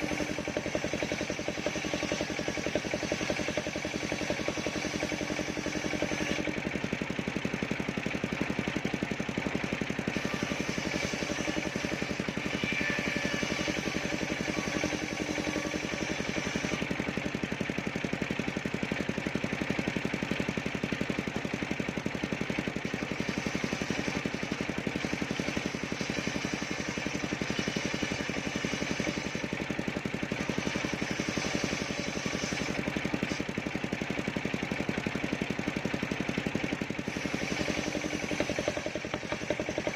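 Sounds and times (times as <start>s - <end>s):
circular sawmill running: 0.0s - 39.9s.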